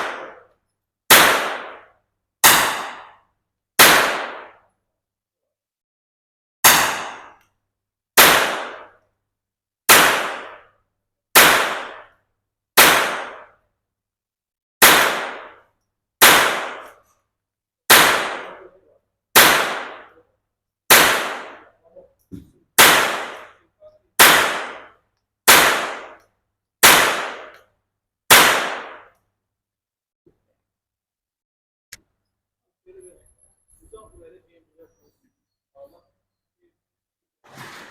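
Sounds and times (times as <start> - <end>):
rifle shots: 0.0 - 0.4, 1.1 - 3.2, 3.8 - 4.6, 6.6 - 7.4, 8.2 - 9.0, 9.9 - 10.7, 11.4 - 12.1, 12.8 - 13.6, 14.8 - 15.6, 16.2 - 17.0, 17.9 - 18.7, 19.4 - 20.2, 20.9 - 21.7, 22.8 - 23.6, 24.2 - 26.2, 26.8 - 27.5, 28.3 - 29.1.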